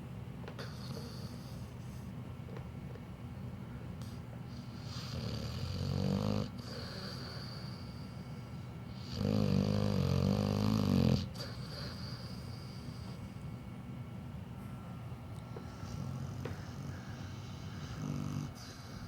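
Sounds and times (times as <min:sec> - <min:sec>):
dog snoring: 0:00.6 - 0:02.0, 0:04.5 - 0:13.4, 0:15.6 - 0:19.0.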